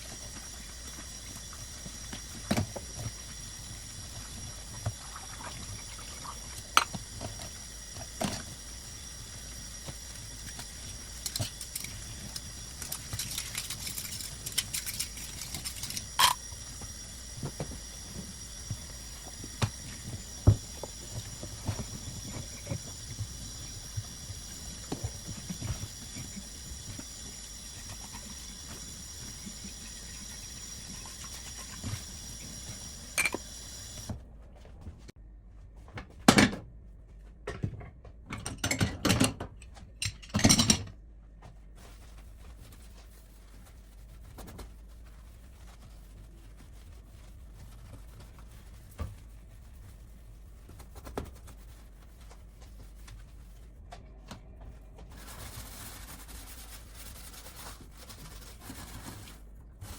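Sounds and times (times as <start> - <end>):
high whine: 0.0 - 34.2
steady background hum: 0.0 - 59.9.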